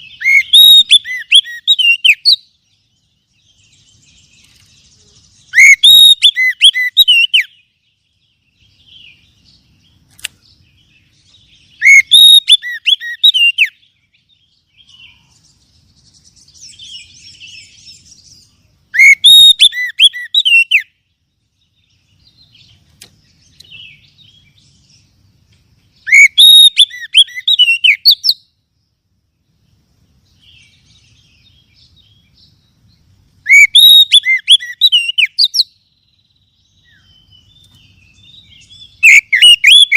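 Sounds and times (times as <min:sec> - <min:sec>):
bird song with whistled notes: 0:00.0 - 0:39.9
faint bird twittering: 0:00.0 - 0:39.9.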